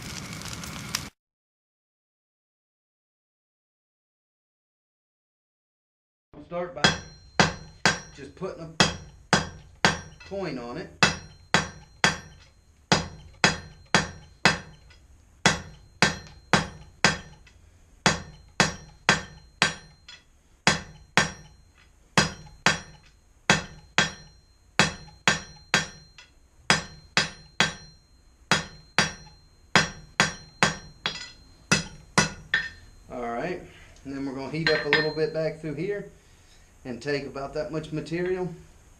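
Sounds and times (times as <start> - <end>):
hammer striking steel on anvil: 6.7 - 33.2, 34.6 - 35.7
anvil ringing: 6.7 - 33.6, 34.6 - 35.7.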